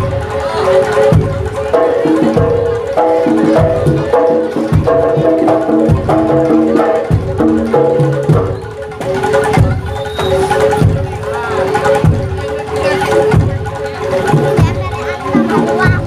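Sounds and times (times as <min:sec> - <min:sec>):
hand-drum strokes: 0:00.0 - 0:16.0.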